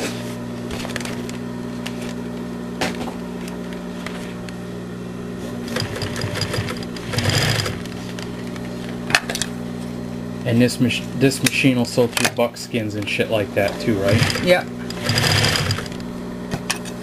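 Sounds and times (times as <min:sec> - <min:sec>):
sewing machine motor humming: 0:05.6 - 0:08.6, 0:13.6 - 0:16.1
mechanical clatter: 0:05.7 - 0:09.4, 0:14.0 - 0:16.1.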